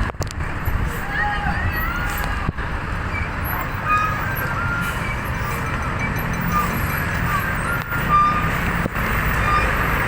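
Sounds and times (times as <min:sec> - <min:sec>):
large vehicle engine running: 0:00.0 - 0:10.0
road noise: 0:00.0 - 0:10.0.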